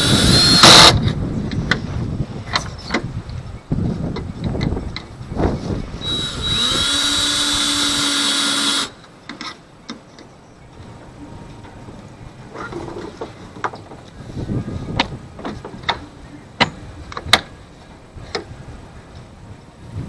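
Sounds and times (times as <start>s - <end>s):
power tool whining: 0.0s - 1.0s, 6.0s - 9.0s.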